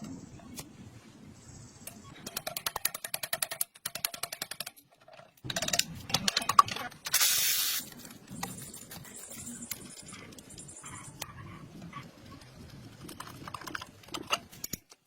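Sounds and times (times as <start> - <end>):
rapid tool clicks: 2.2 - 4.8
spray hiss: 7.1 - 7.9.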